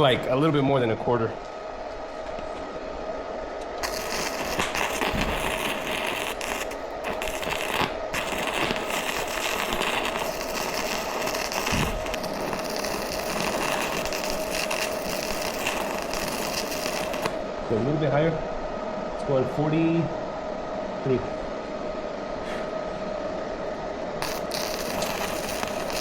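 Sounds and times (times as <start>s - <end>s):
welder machine hum: 0.0s - 18.4s, 21.0s - 26.0s
welding arc crackling: 3.8s - 17.5s, 24.2s - 26.0s.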